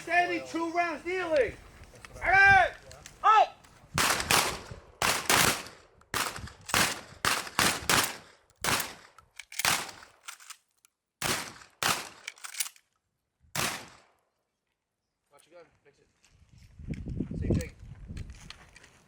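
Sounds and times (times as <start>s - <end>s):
shotguns firing with echo: 4.0s - 10.2s, 11.2s - 12.6s, 13.6s - 14.1s.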